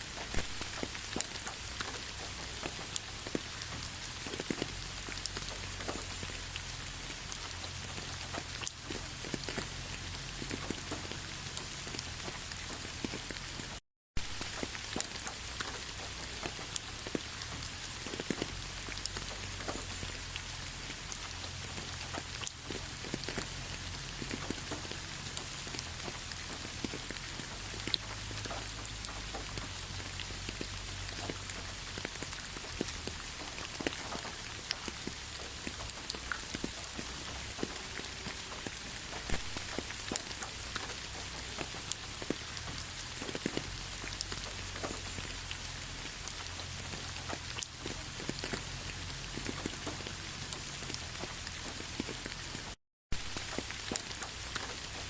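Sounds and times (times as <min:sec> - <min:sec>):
raindrops clicking on a surface: 0:00.0 - 0:55.0
steady rain hiss: 0:00.0 - 0:55.0.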